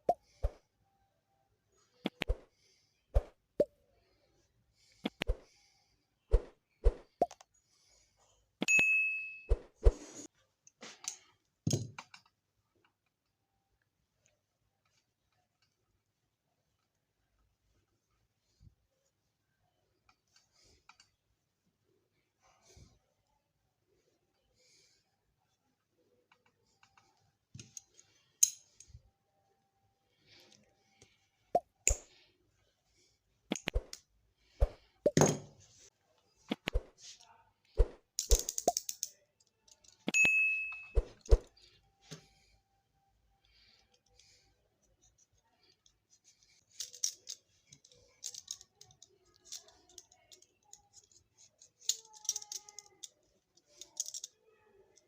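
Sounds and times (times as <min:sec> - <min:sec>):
clicks of small parts and tools: 0:10.6 - 0:13.2, 0:20.1 - 0:21.2, 0:26.2 - 0:29.0, 0:31.8 - 0:32.2, 0:33.5 - 0:35.5, 0:36.5 - 0:42.3, 0:43.8 - 0:55.0
small hard parts clicking: 0:38.2 - 0:40.2, 0:46.6 - 0:54.4.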